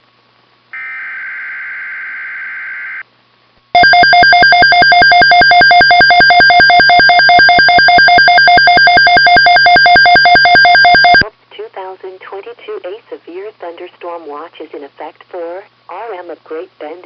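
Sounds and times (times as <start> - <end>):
buzzy data tones: 0.8 - 3.0
pulsing electronic alarm tone: 0.8 - 3.0, 3.8 - 11.2.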